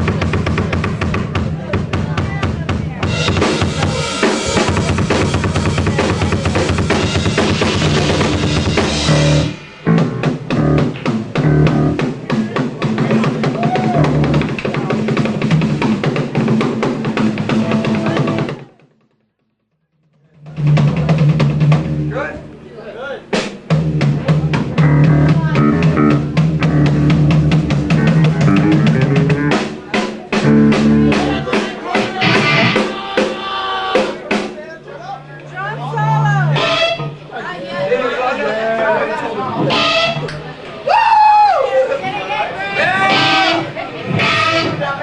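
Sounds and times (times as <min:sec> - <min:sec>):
live rock band playing: 0:00.0 - 0:18.8, 0:20.4 - 0:22.3, 0:23.3 - 0:37.6, 0:39.5 - 0:40.6, 0:42.4 - 0:45.0
bass guitar: 0:00.0 - 0:19.2, 0:20.1 - 0:22.7, 0:23.3 - 0:37.8, 0:39.5 - 0:40.6, 0:42.7 - 0:45.0
drum kit: 0:00.0 - 0:22.5, 0:23.2 - 0:37.5, 0:39.5 - 0:41.6, 0:42.7 - 0:45.0
guitar riff: 0:06.0 - 0:12.1, 0:17.4 - 0:18.6, 0:24.0 - 0:29.7, 0:30.3 - 0:34.3, 0:35.0 - 0:37.4, 0:39.6 - 0:40.4, 0:43.0 - 0:45.0.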